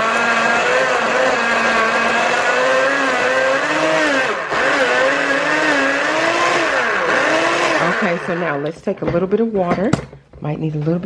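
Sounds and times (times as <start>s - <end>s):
blender motor whining: 0.0s - 8.7s.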